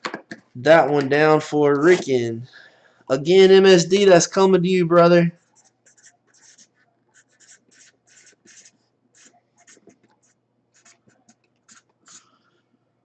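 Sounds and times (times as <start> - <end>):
pen scratching on paper: 5.4 - 12.2.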